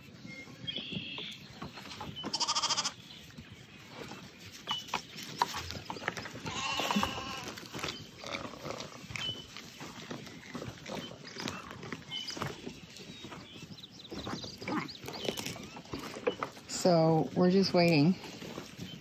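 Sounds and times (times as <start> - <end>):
sheep bleating: 2.3 - 3.0, 6.4 - 7.6.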